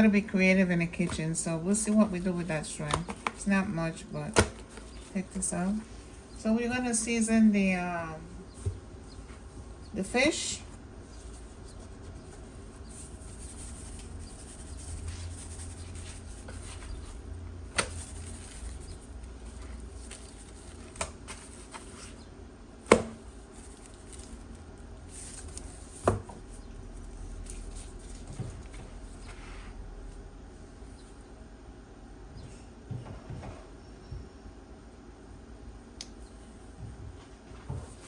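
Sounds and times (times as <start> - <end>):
low steady hum: 0.0 - 38.0.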